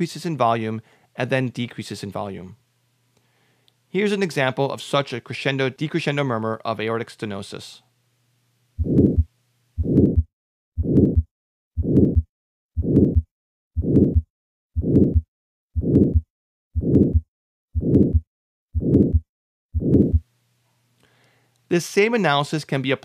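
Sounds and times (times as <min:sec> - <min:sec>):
heart sounds: 0:08.8 - 0:20.2
systolic heart murmur: 0:08.8 - 0:20.2.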